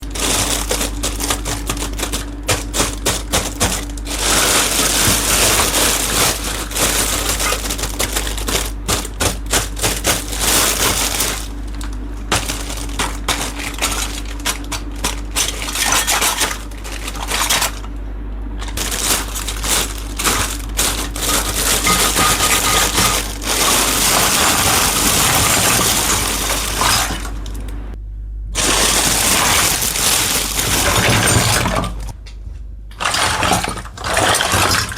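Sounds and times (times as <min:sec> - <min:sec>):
low steady hum: 0:00.0 - 0:34.9.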